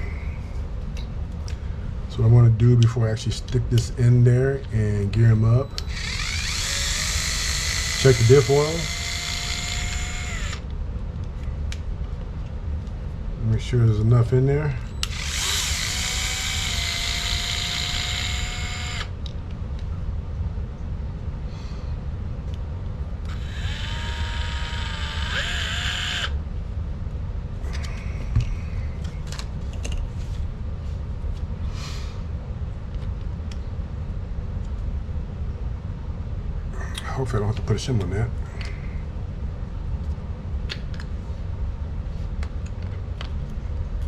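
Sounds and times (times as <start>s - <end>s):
electric driver whirring: 5.8s - 10.7s, 15.0s - 19.2s, 23.2s - 26.4s.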